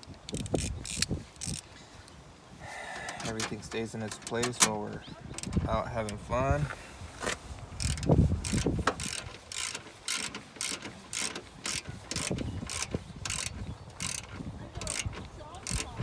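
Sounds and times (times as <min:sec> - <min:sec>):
ratchet wrench clicking: 0:00.3 - 0:01.6, 0:07.8 - 0:16.0.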